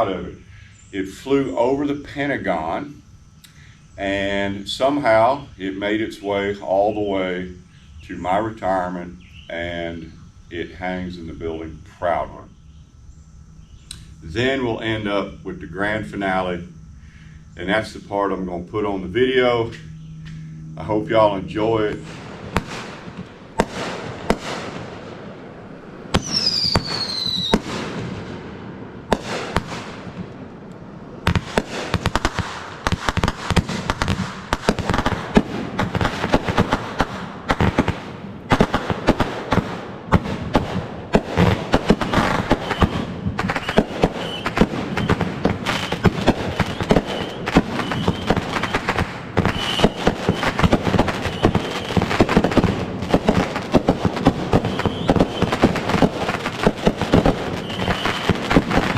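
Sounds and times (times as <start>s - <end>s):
fireworks bangs and crackles: 20.8s - 30.6s, 31.2s - 58.9s
firework whistle falling in pitch: 26.2s - 27.7s, 41.9s - 52.4s, 54.6s - 55.6s, 57.4s - 58.9s.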